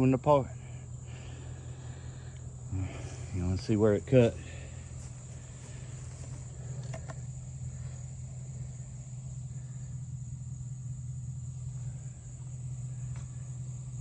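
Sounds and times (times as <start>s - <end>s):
chainsaw engine idling: 0.0s - 14.0s.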